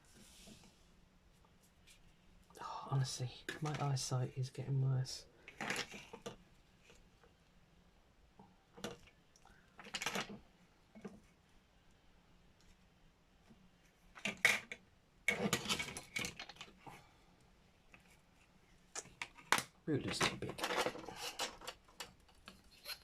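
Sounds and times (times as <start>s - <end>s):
craft tools and paper clattering: 19.0s - 23.0s.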